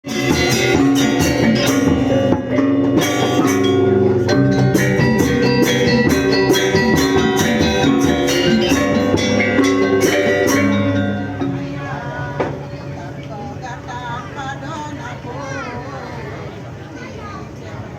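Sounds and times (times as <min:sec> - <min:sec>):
drums: 0:00.0 - 0:13.2
ringing pitched percussion: 0:00.0 - 0:13.6.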